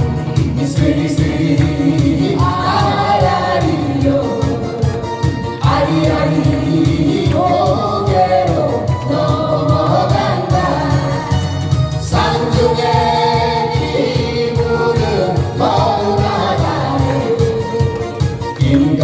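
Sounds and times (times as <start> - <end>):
group singing folk song: 0.0 - 19.0.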